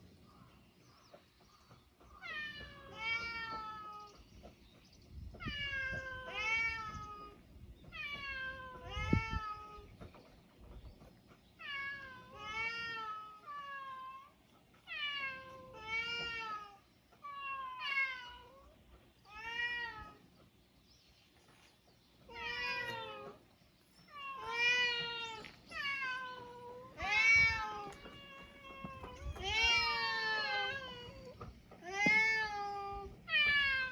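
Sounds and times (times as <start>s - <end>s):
cats meowing: 2.2s - 4.2s, 5.4s - 10.0s, 11.6s - 20.3s, 22.2s - 23.5s, 24.1s - 33.9s.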